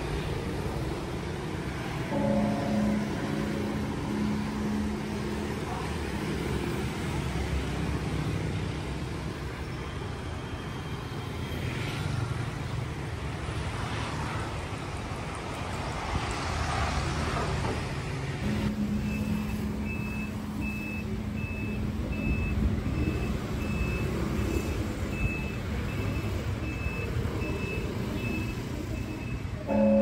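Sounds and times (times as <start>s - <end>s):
low rumbling outdoor noise: 0.0s - 8.9s.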